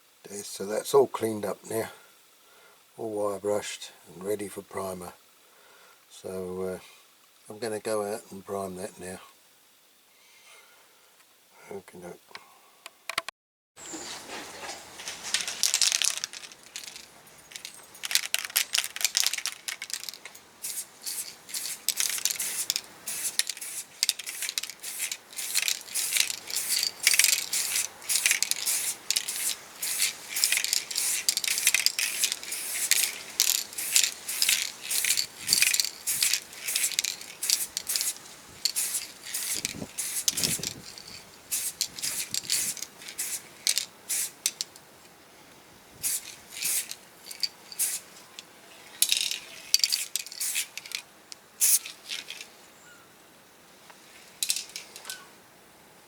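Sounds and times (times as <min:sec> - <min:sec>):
spray can rattling: 0:15.0 - 0:44.8, 0:46.0 - 0:51.0, 0:51.6 - 0:52.5, 0:54.4 - 0:55.1
aerosol spray bursts: 0:16.6 - 0:44.7, 0:46.0 - 0:48.1, 0:49.7 - 0:50.9, 0:51.6 - 0:52.0.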